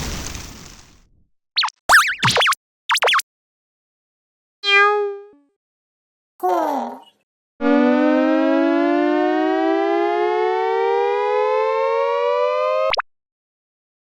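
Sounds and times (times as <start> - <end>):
rising buzzy siren-like tone: 7.6 - 13.0.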